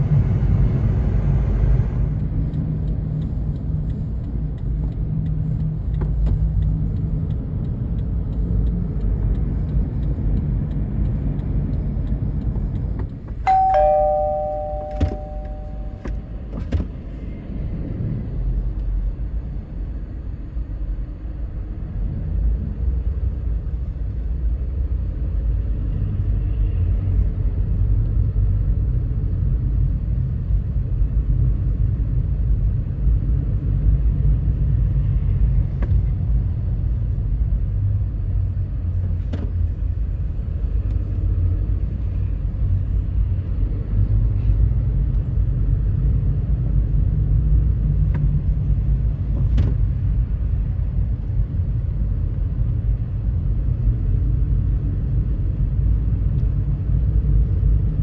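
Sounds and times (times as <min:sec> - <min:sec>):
vehicle rumble: 0:00.7 - 0:17.0
two-note falling chime: 0:13.5 - 0:16.3.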